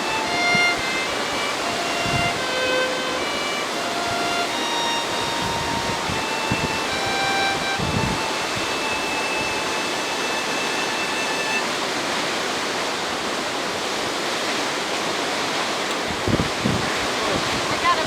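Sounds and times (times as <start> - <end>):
waterfall rushing: 0.0 - 18.0
faint held pitched notes: 0.1 - 11.8.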